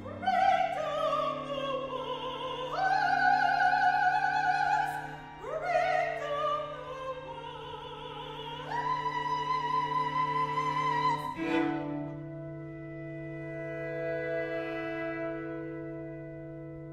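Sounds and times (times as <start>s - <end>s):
operatic voice singing: 0.0s - 11.5s.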